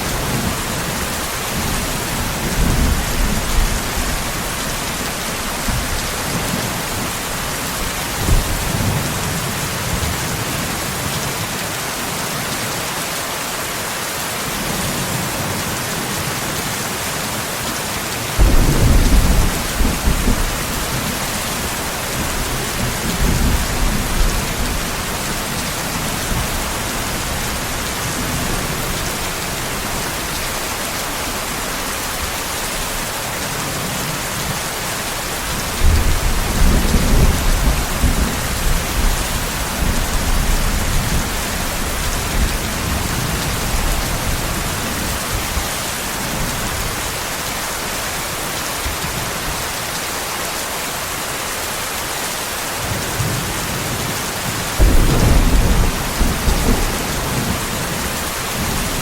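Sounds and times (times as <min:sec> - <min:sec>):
heavy rain: 0:00.0 - 0:59.0
thunder rumbling: 0:18.4 - 0:30.5, 0:54.5 - 0:59.0.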